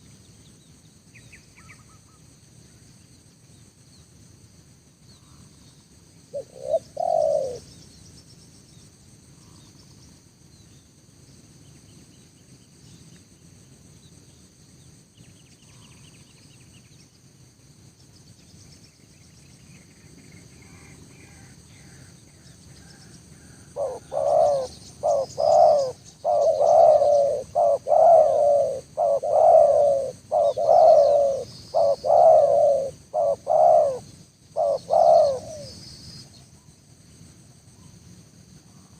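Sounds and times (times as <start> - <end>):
dove cooing: 6.3 - 7.7, 23.4 - 35.8.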